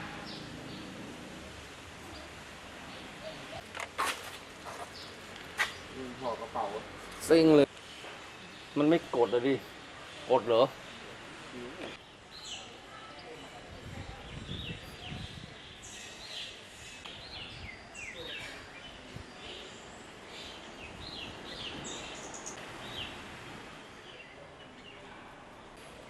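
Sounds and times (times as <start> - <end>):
outdoor background hiss: 0.0 - 26.0
small birds chirping: 4.6 - 25.2.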